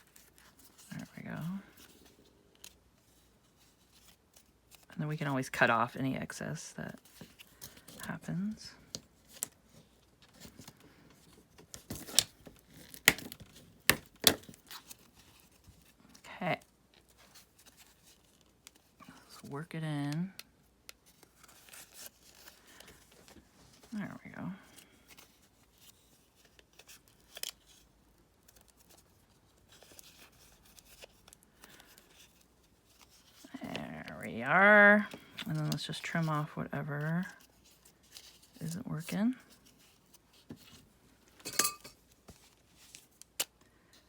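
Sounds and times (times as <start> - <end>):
paper rustling: 0.0 - 4.9, 16.9 - 19.5, 20.9 - 24.0, 24.6 - 41.3, 42.0 - 44.0
paper rustling and clicking: 16.9 - 19.0.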